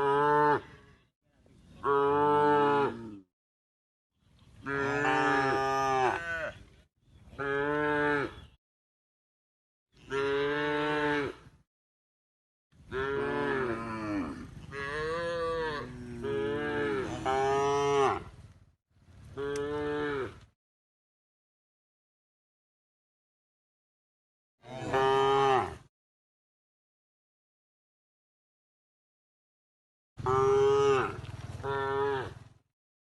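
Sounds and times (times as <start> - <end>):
cows mooing: 4.6 - 6.6, 7.4 - 8.5, 12.9 - 18.3, 24.7 - 25.8, 30.2 - 32.4.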